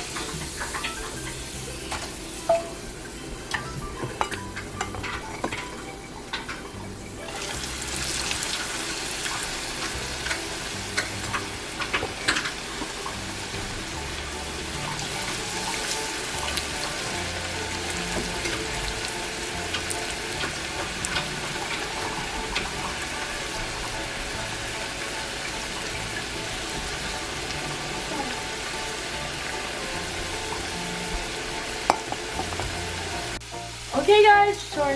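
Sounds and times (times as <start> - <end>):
fries sizzling in hot oil: 0.0 - 34.9.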